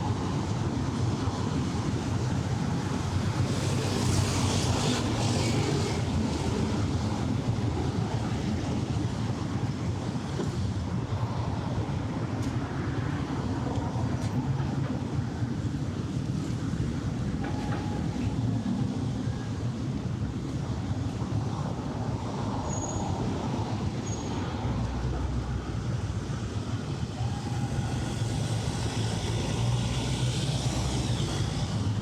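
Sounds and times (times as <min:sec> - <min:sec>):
passing vehicle hiss: 0:00.0 - 0:08.4, 0:15.4 - 0:32.0
low rumble of city traffic: 0:00.0 - 0:32.0.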